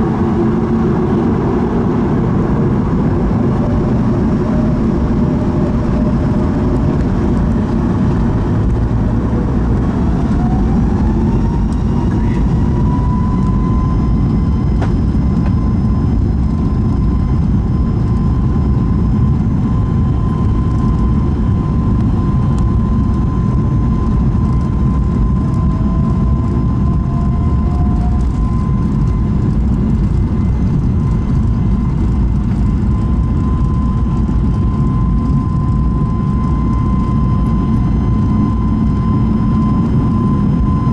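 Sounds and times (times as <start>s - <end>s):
jet engines spooling up: 0.0s - 40.9s.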